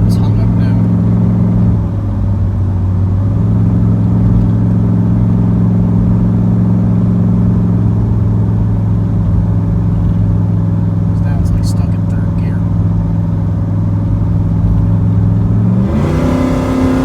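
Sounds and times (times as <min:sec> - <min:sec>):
car engine running: 0:00.0 - 0:17.0.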